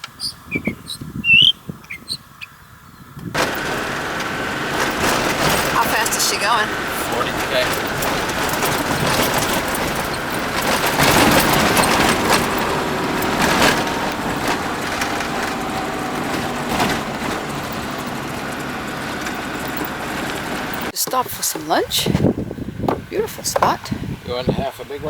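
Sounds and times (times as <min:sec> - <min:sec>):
car engine and road noise: 0:00.0 - 0:25.0
knocks and rattles: 0:03.4 - 0:22.3, 0:22.9 - 0:23.9.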